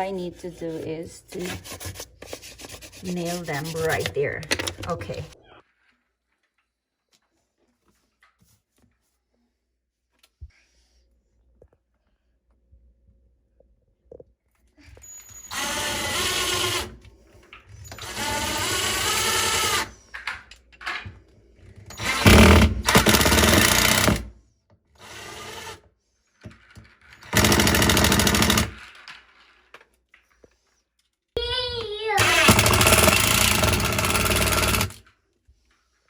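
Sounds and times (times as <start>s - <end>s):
electric drill drilling into wall: 15.2s - 17.0s, 17.8s - 20.0s, 21.9s - 24.3s, 25.0s - 25.8s, 27.2s - 28.9s, 32.1s - 35.0s.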